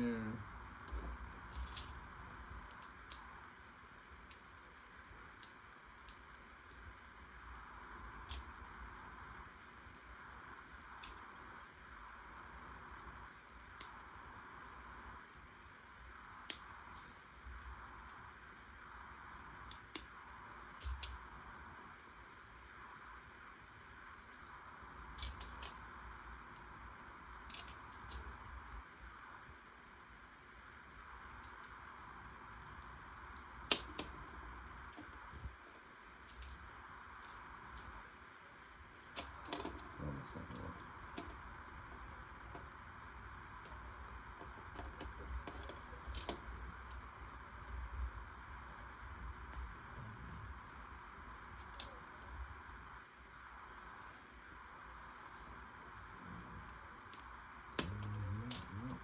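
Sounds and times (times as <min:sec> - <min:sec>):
faint steady hiss: 0:00.0 - 0:59.0
plastic pieces clicking: 0:00.9 - 0:03.2, 0:25.2 - 0:25.8, 0:27.5 - 0:28.2, 0:33.7 - 0:34.3, 0:39.1 - 0:39.9, 0:40.5 - 0:41.4, 0:44.7 - 0:46.4.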